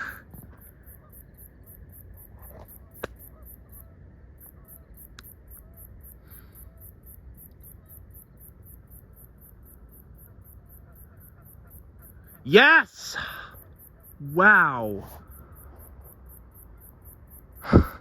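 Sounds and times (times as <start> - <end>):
night insects trilling: 0.0 - 18.0.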